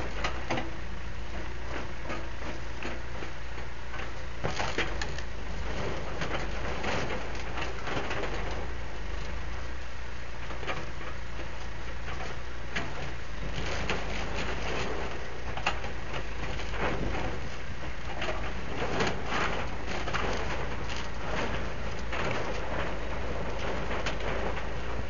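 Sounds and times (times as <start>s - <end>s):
diesel engine humming: 0.0s - 25.0s
demolition debris cracking: 12.8s - 25.0s.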